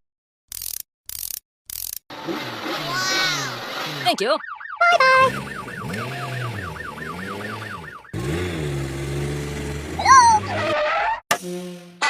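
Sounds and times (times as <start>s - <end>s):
emergency vehicle siren warbling: 4.0s - 9.0s.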